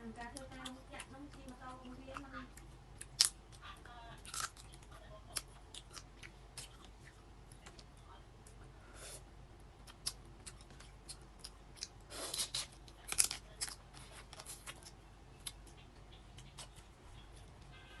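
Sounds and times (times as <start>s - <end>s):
crab shells cracking and crunching: 0.2s - 3.6s, 4.2s - 7.0s, 9.8s - 15.8s.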